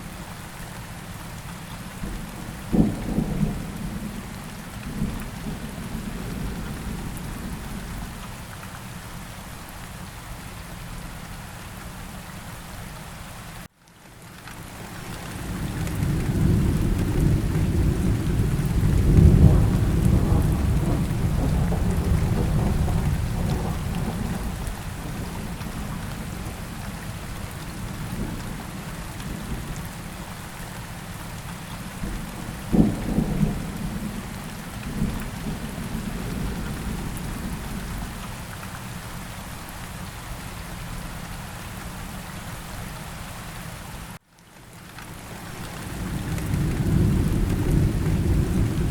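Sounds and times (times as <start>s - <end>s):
steady rain: 0.0s - 48.9s
low roll of thunder: 2.0s - 8.2s, 15.1s - 29.8s, 32.0s - 38.2s, 45.5s - 48.9s
sharp thunderclap: 15.5s - 26.6s, 46.0s - 48.9s.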